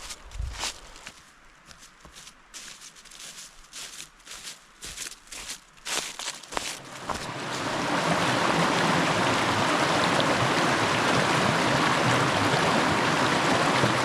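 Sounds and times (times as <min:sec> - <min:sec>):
footsteps on leaves and rock: 0:00.0 - 0:07.7
mountain creek rushing: 0:06.4 - 0:14.0.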